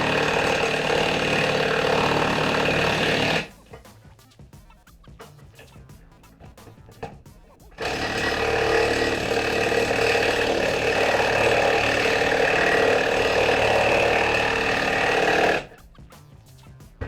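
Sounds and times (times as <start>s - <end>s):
impact driver hammering bolt: 7.8s - 15.7s.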